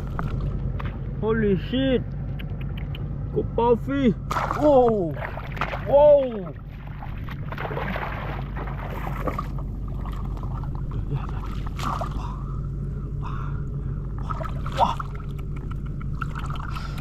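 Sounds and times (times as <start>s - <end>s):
water and mud sloshing: 0.0s - 1.2s, 4.2s - 17.0s
low motor hum: 0.0s - 17.0s.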